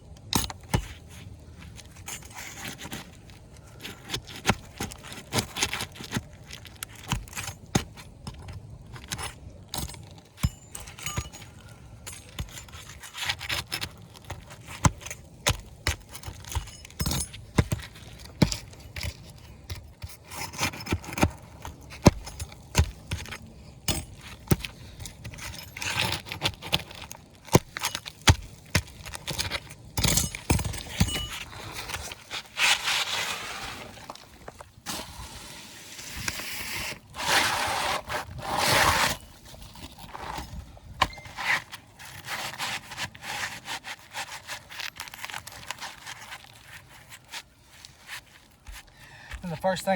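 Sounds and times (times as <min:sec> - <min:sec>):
pry bar clicking and scraping shingles: 0:00.0 - 0:33.0
scraping rustle: 0:24.1 - 0:49.0.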